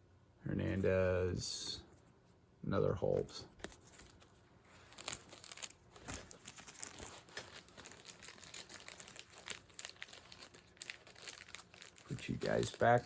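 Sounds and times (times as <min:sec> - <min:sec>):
plastic bag crinkling: 0:03.8 - 0:13.0.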